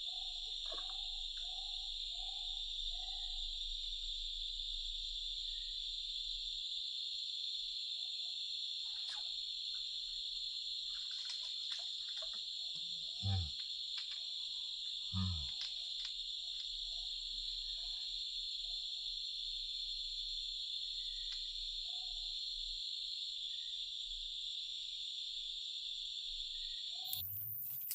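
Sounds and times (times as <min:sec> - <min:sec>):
crickets trilling: 0:00.0 - 0:27.9
short low calls: 0:13.2 - 0:13.5, 0:15.1 - 0:15.5.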